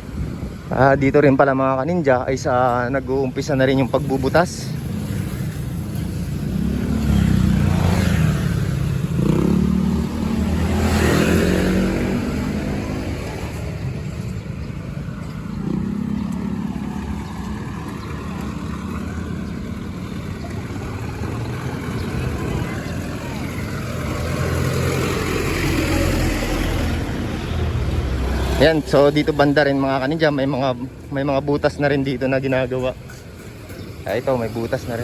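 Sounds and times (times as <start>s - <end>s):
traffic engines passing: 0.0s - 35.0s.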